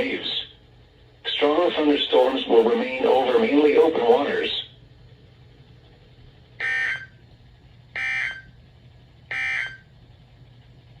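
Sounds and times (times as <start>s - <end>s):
digital data tone bursts: 8.0s - 8.5s, 9.3s - 9.8s.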